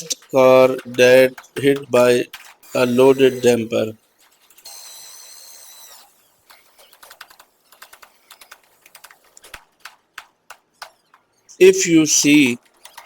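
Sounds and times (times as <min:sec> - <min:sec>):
light irregular clicks and taps: 0:00.0 - 0:02.6.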